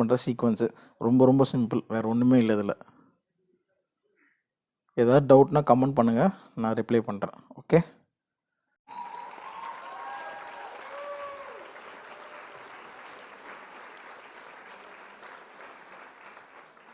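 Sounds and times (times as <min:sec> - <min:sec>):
whistles from crowd: 0:08.9 - 0:12.5
crowd applause: 0:08.9 - 0:16.9.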